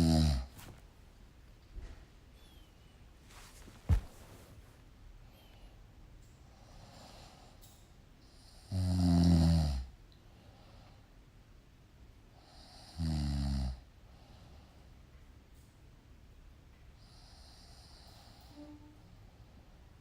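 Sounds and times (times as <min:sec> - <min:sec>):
loud snores: 0:00.0 - 0:00.5, 0:08.4 - 0:09.9, 0:12.4 - 0:13.8
faint breathing: 0:01.9 - 0:08.6, 0:14.0 - 0:15.1.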